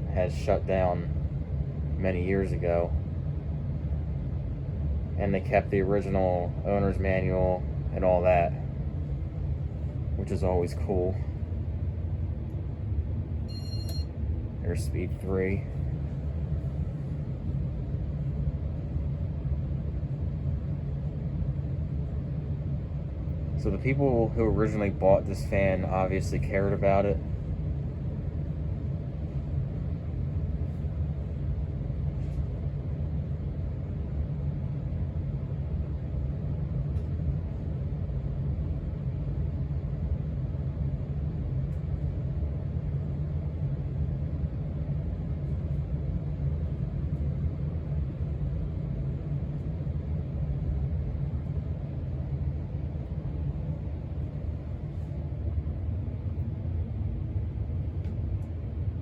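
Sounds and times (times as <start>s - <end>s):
ceiling fan rumbling: 0.0s - 59.0s.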